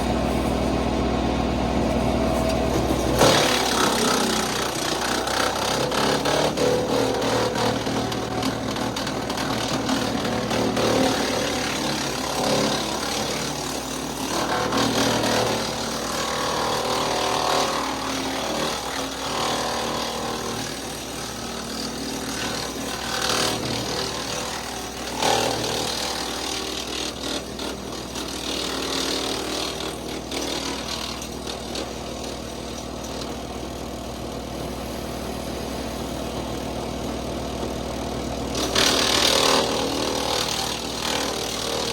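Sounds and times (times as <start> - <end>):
tractor diesel engine under load: 0.0 - 3.8
wood chipper chipping saplings: 0.0 - 41.9.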